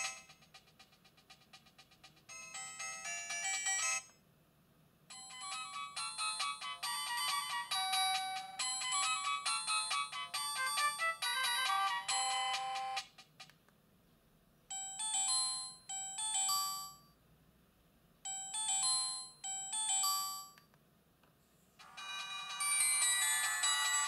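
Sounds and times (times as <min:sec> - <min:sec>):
phone ringtone through small loudspeaker: 0:05.2 - 0:13.0, 0:21.8 - 0:24.0.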